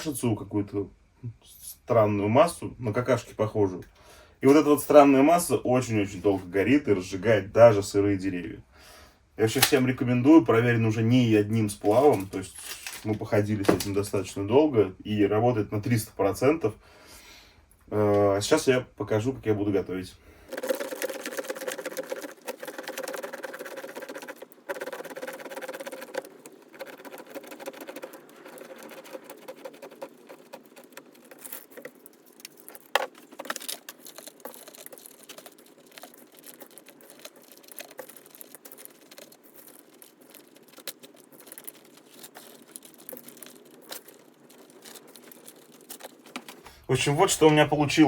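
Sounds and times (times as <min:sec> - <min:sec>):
soap rasping on a grater: 0:20.5 - 0:46.6.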